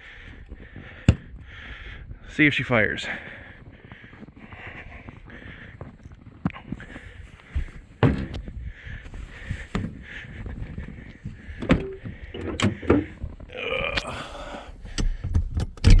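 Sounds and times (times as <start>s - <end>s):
vehicle door creaking open: 11.6s - 13.2s.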